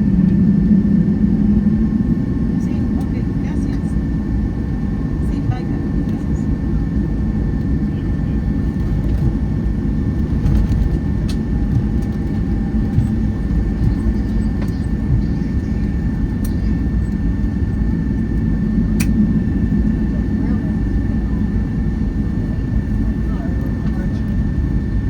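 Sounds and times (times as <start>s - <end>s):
low rumble of engines and airflow: 0.0s - 25.0s.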